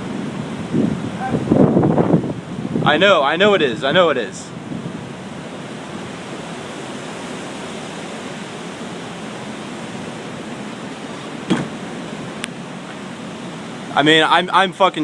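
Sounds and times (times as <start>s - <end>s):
storm wind roaring: 0.0s - 15.0s
knock: 11.5s - 11.8s.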